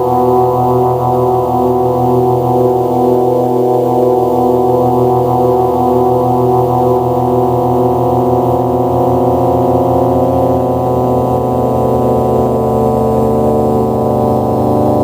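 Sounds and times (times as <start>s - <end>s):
synthesizer drone: 0.0s - 15.0s.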